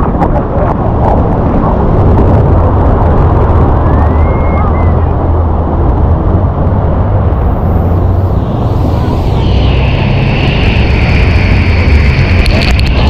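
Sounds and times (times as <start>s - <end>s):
boat engine running: 4.9s - 13.0s
water rushing: 7.1s - 13.0s
faint rising tone: 7.3s - 13.0s.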